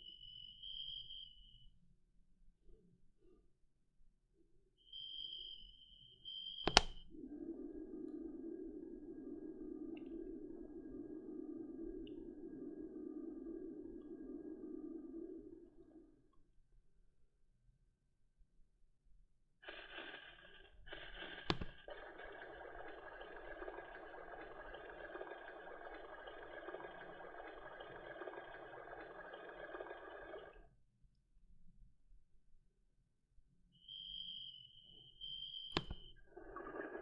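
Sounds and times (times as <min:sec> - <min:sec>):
faint hum: 0:04.6 - 0:17.4, 0:19.7 - 0:30.7
sharp click: 0:06.6 - 0:07.0, 0:35.7 - 0:36.1.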